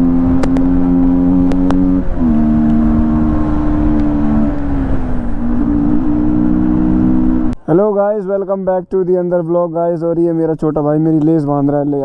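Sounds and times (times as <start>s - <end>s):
motorcycle engine running: 0.0s - 7.6s
sharp clicks: 0.4s - 0.7s.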